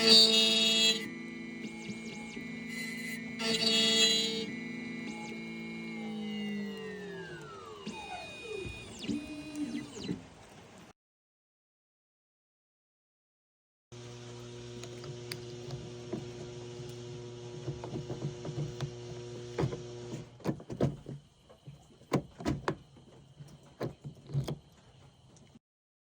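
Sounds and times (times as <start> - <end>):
machine humming: 0.0 - 10.4, 14.0 - 20.4.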